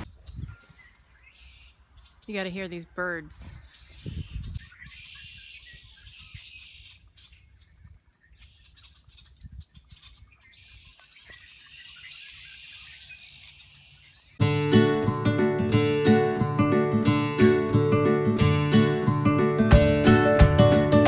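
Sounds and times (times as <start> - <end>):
small birds chirping in chorus: 0.0 - 14.4.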